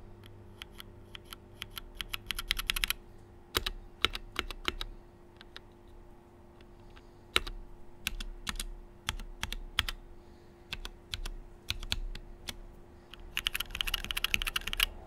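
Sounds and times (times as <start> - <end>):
mechanical keyboard key clicks: 0.6 - 5.6, 10.7 - 14.9.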